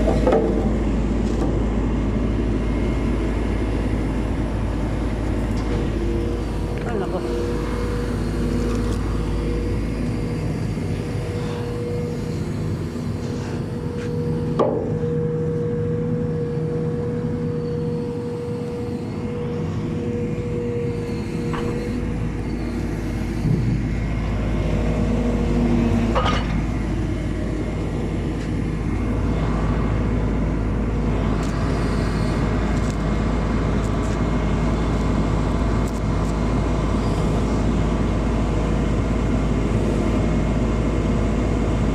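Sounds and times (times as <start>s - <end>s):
backhoe engine running: 0.0s - 41.9s
steady whine: 0.0s - 41.9s.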